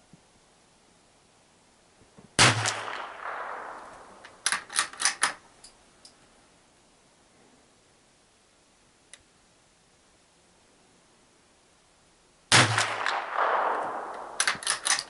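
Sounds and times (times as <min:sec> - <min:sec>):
rifle shot echoing: 0:02.4 - 0:05.3, 0:12.5 - 0:15.0
rifle bolt metallic clicks: 0:04.2 - 0:06.2, 0:13.0 - 0:15.0.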